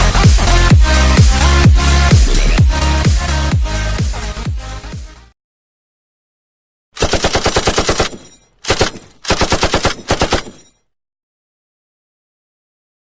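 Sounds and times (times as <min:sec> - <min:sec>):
automatic gunfire bursts: 0:07.0 - 0:10.7.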